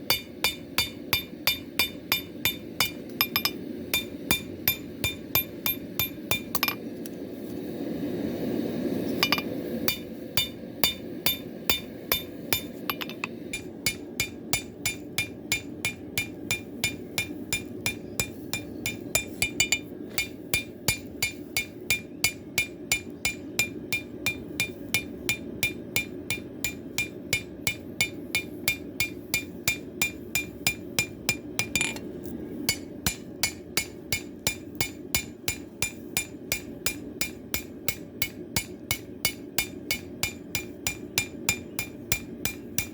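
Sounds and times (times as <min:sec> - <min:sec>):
hammer striking metal on anvil: 0:00.0 - 0:06.8, 0:09.2 - 0:32.0, 0:32.7 - 0:42.9
steady low rush: 0:00.0 - 0:23.0.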